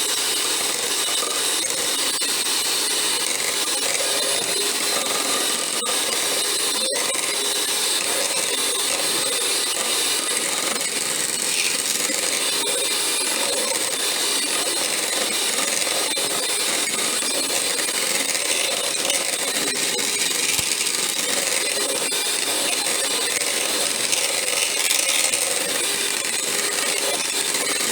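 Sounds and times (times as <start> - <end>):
electric hand mixer whipping: 7.8 - 27.9.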